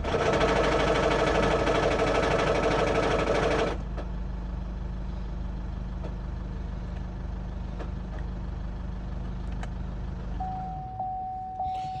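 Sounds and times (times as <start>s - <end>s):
steady single-tone beep: 10.4s - 12.0s.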